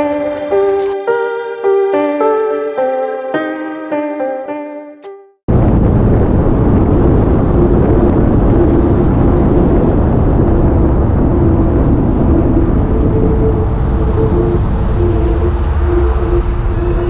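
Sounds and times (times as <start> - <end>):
moving truck rumble: 5.5 - 17.0.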